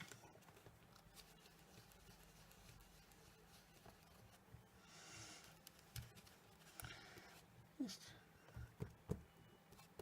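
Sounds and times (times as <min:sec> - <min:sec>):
brush rubbing on cardstock: 0:00.7 - 0:06.7.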